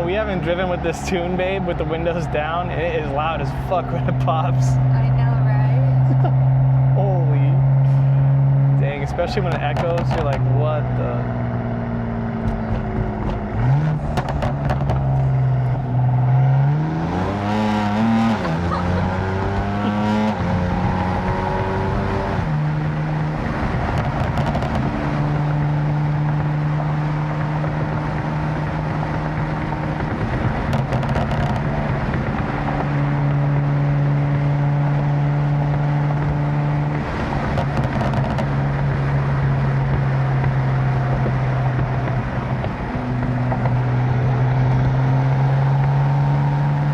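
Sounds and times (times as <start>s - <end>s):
car engine revving: 0.0s - 46.9s
exhaust pops and crackles: 8.8s - 16.2s, 18.0s - 44.5s.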